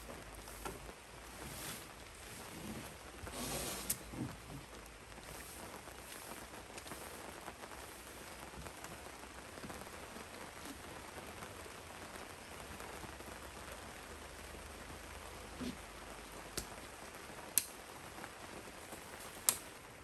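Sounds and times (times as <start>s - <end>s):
raindrops ticking: 0.0s - 3.3s, 3.9s - 20.0s
steady rain falling: 0.0s - 20.0s.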